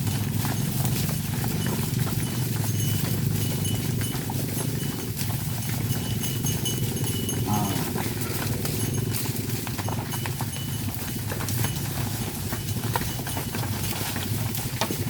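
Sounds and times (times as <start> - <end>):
cattle hooves clopping: 0.0 - 15.0.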